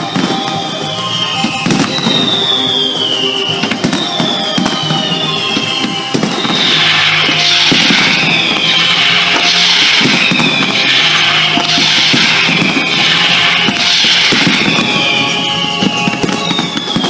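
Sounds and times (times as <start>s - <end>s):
fireworks bangs: 0.0s - 17.0s
fireworks crackling: 0.0s - 17.0s
music: 0.0s - 17.0s
high falling tone: 4.0s - 16.8s.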